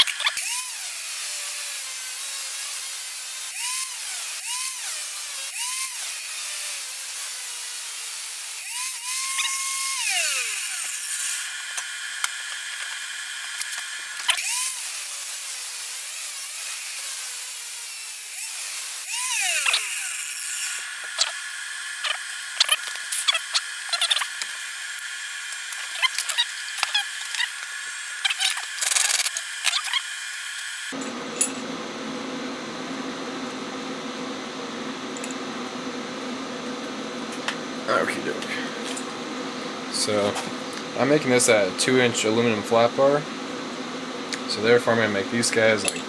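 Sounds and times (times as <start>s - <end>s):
bandsaw cutting metal: 0.0s - 31.7s, 44.4s - 46.0s.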